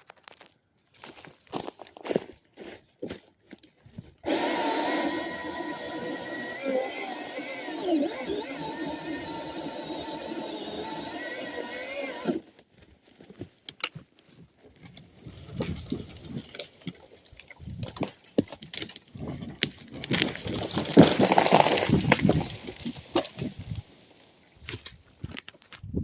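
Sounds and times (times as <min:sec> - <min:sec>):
wood cracking and snapping: 0:00.0 - 0:01.6, 0:04.2 - 0:12.4, 0:14.7 - 0:25.9
chainsaw running: 0:04.2 - 0:12.5, 0:20.4 - 0:23.6
tree crashing down: 0:19.7 - 0:24.4.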